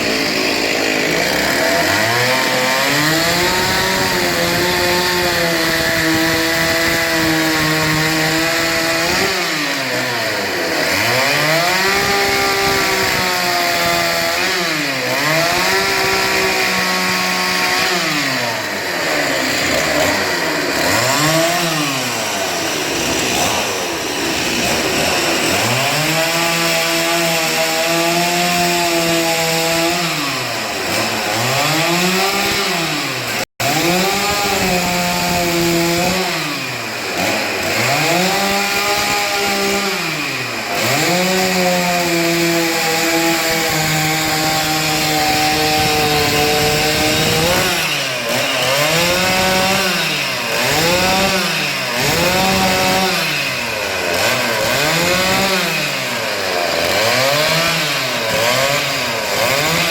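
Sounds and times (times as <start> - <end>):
chainsaw cutting wood: 0.0 - 59.9.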